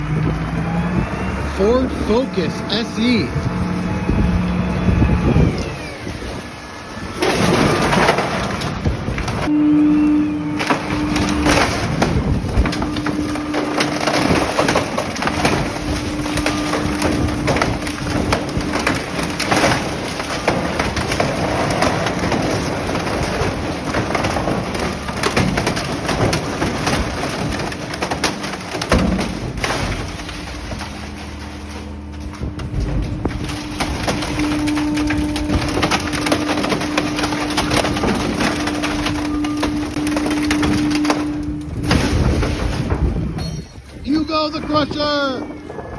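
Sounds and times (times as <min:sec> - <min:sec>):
crusher machinery hum: 0:00.0 - 0:45.9
car body cracking and snapping: 0:07.2 - 0:09.5, 0:10.5 - 0:43.4.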